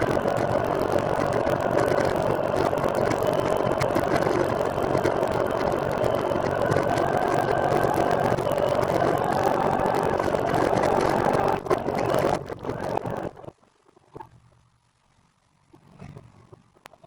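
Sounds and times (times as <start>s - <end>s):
trike rolling noise: 0.0s - 13.6s
faint steady whine: 0.0s - 17.0s.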